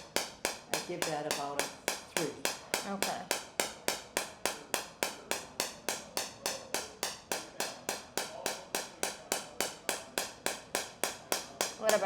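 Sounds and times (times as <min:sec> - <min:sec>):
treatment device clicking: 0:00.0 - 0:12.0.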